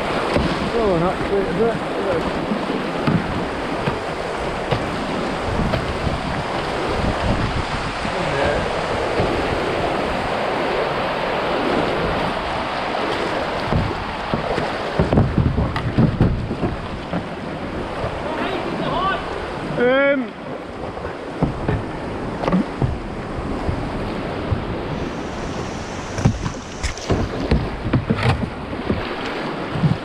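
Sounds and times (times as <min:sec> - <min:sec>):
whitewater river rushing: 0:00.0 - 0:30.0
wind buffeting microphone: 0:00.0 - 0:30.0
low thumps: 0:13.7 - 0:17.3, 0:20.9 - 0:29.1.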